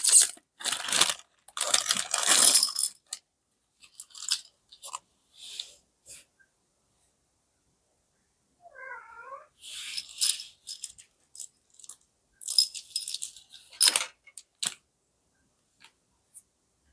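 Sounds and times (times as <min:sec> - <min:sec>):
packaging rustling: 0:00.0 - 0:02.7
cat meowing: 0:08.6 - 0:09.6
small parts clicking: 0:10.0 - 0:14.8.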